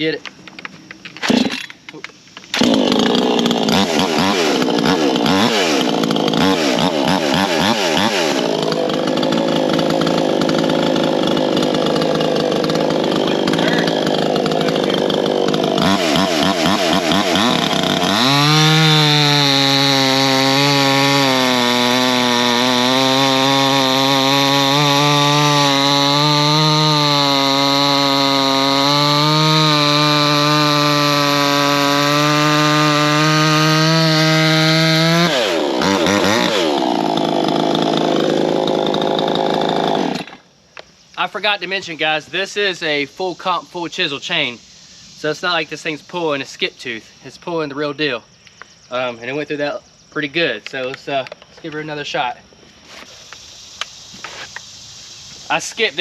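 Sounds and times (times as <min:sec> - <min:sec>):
chainsaw cutting log: 0:00.3 - 0:40.5.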